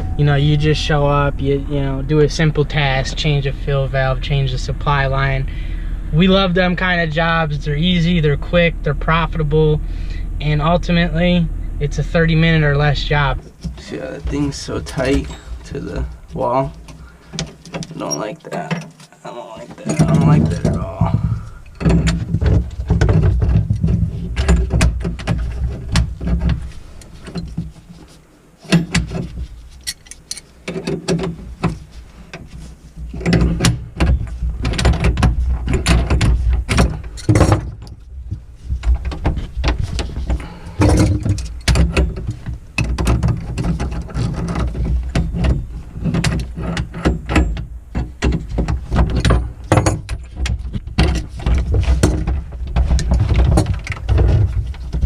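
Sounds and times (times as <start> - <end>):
steady low rumble: 0.0 - 17.3, 19.9 - 24.7.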